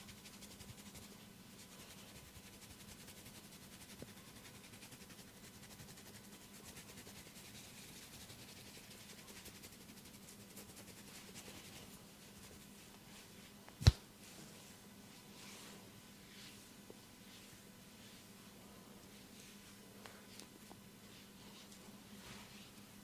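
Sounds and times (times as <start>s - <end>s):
hands rubbing oiled skin: 0.0s - 13.3s.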